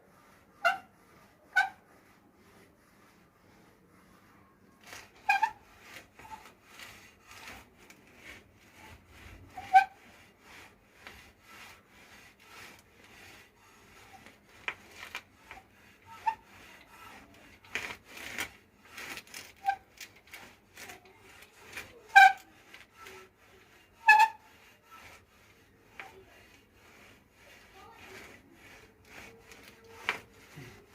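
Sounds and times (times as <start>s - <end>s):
sharp squeaks: 0.6s - 0.9s, 1.5s - 1.8s, 4.8s - 7.6s, 24.0s - 24.5s
bicycle handlebar creaking and clicking: 14.6s - 21.0s.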